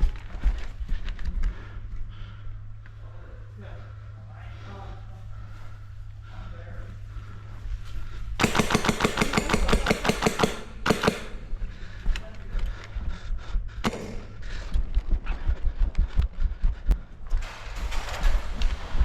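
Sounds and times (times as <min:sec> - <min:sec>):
airsoft gun firing full auto: 0:08.4 - 0:11.6, 0:13.9 - 0:14.5.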